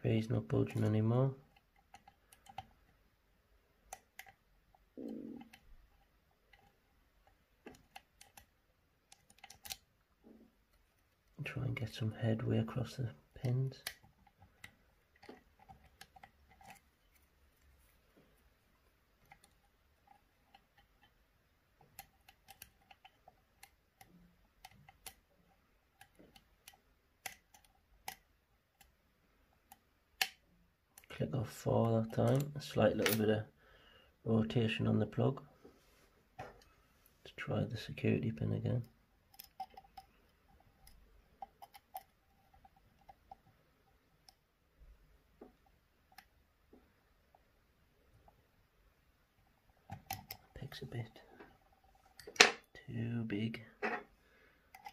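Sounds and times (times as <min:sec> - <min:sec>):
lock pick clicking: 0:01.5 - 0:03.0, 0:06.5 - 0:09.9, 0:21.8 - 0:29.0, 0:29.6 - 0:31.1, 0:39.3 - 0:40.1, 0:40.8 - 0:43.4.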